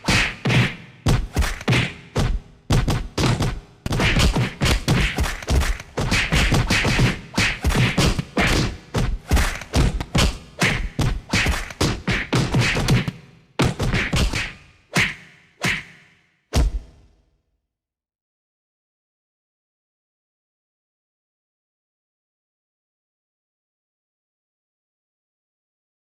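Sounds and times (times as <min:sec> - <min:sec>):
punches and body hits: 0:00.1 - 0:15.8.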